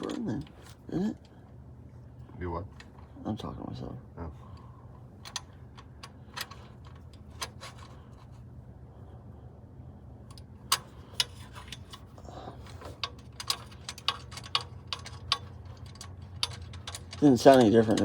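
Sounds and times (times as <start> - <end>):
hand tools clicking and tapping: 10.3 - 18.0.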